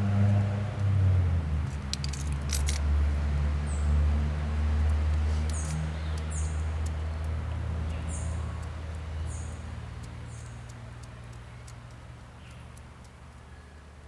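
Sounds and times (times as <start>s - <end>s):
faint ticks: 4.8s - 13.5s.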